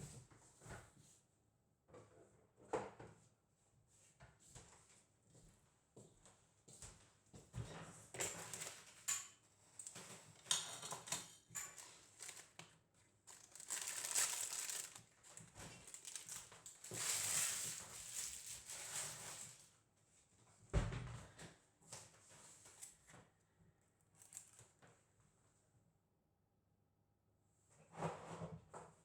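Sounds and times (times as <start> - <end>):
rustling and crinkling: 8.1 - 19.8, 24.2 - 25.0.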